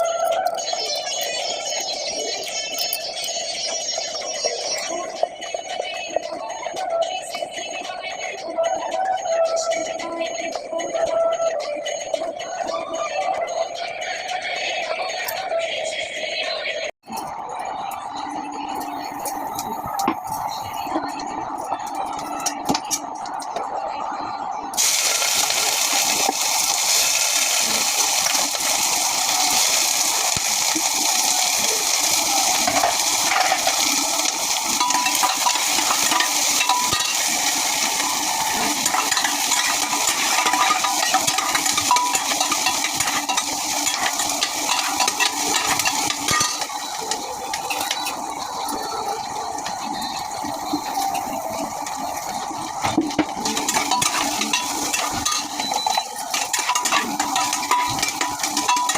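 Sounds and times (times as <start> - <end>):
food sizzling in hot oil: 24.8 - 58.9.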